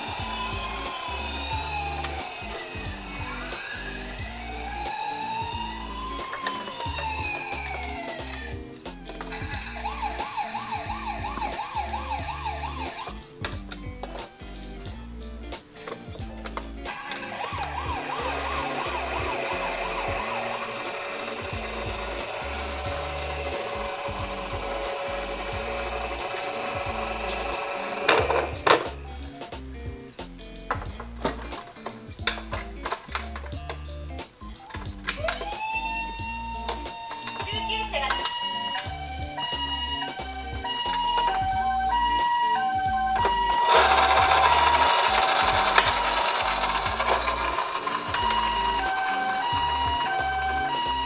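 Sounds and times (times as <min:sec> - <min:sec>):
toy electronic siren warbling: 0:00.0 - 0:08.6, 0:09.3 - 0:13.2, 0:16.9 - 0:28.9, 0:35.2 - 0:51.0
small wheels rolling rattle: 0:00.0 - 0:14.2, 0:15.9 - 0:29.0, 0:42.8 - 0:51.0.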